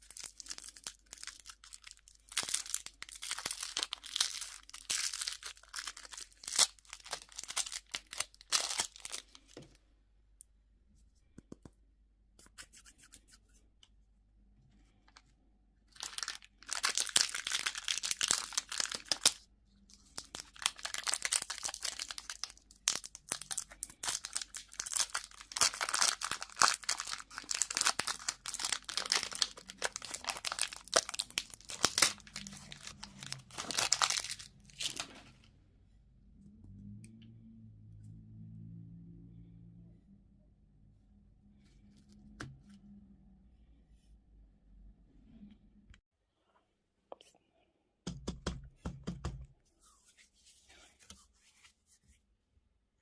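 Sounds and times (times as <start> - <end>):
candy wrapper crinkling: 0.0 - 9.6, 15.9 - 35.3.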